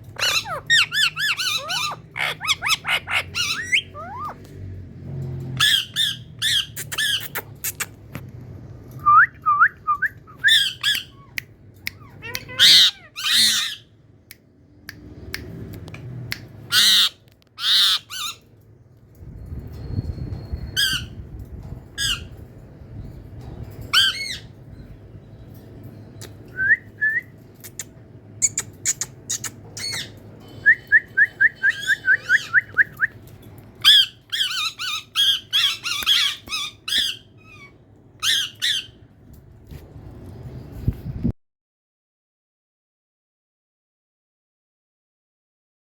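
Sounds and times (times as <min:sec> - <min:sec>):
parrot screeching: 0:00.0 - 0:04.4, 0:05.6 - 0:07.5, 0:10.4 - 0:13.9, 0:16.7 - 0:18.4, 0:23.9 - 0:24.5, 0:29.3 - 0:30.2, 0:31.5 - 0:33.0, 0:33.8 - 0:39.0
parrot chirps: 0:00.1 - 0:04.4, 0:05.6 - 0:08.0, 0:10.3 - 0:13.9, 0:16.6 - 0:18.5, 0:27.6 - 0:33.2, 0:33.8 - 0:39.0.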